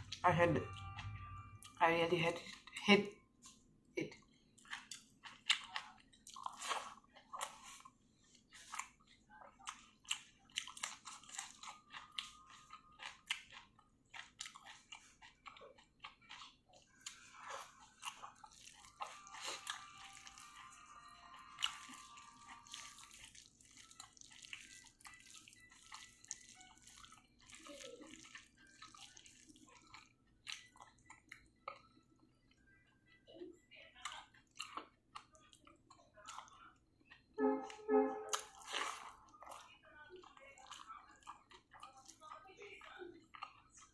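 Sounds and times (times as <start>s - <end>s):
chewing and crunching close up: 2.4s - 32.7s, 33.9s - 37.4s, 38.3s - 43.9s.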